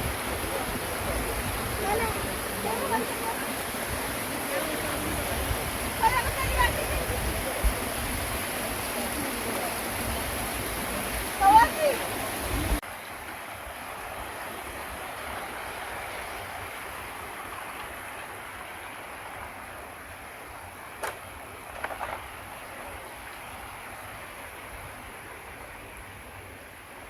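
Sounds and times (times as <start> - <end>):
waterfall rushing: 0.0 - 27.0.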